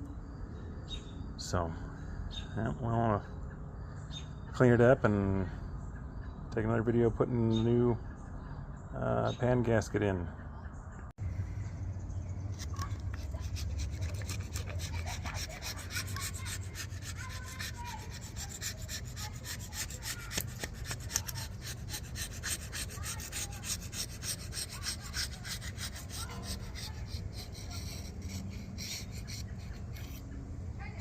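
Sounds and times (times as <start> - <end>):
razor blade scraping metal: 12.5 - 30.4.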